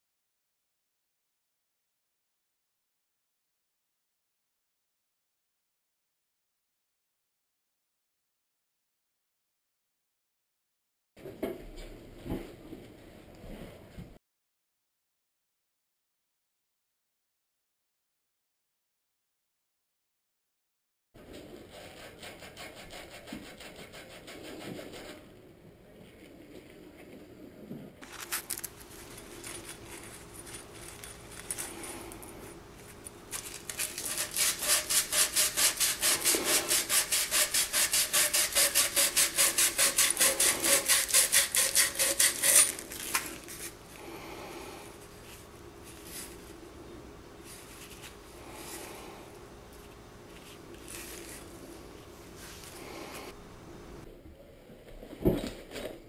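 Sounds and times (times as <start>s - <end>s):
scraping on copper pipe: 21.3s - 25.2s, 28.0s - 43.8s.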